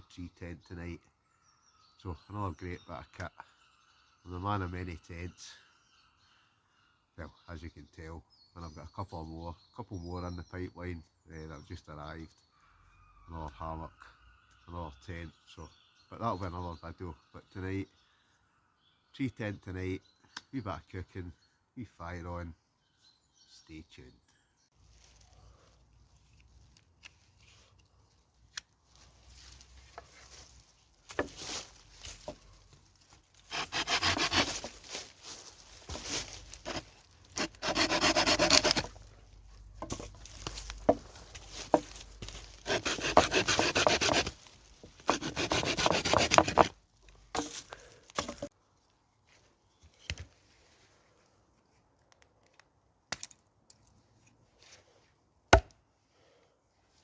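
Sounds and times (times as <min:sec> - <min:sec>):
hand saw cutting wood: 0:33.5 - 0:34.8, 0:36.6 - 0:39.0, 0:42.6 - 0:46.7
wood knocking: 0:39.8 - 0:40.2, 0:48.2 - 0:48.5.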